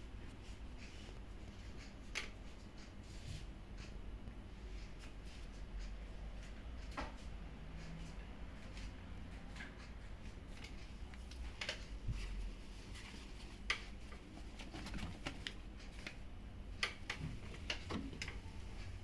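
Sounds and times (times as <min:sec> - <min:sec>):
washing machine humming: 0:00.0 - 0:19.0
light clicks and knocks: 0:16.8 - 0:19.0.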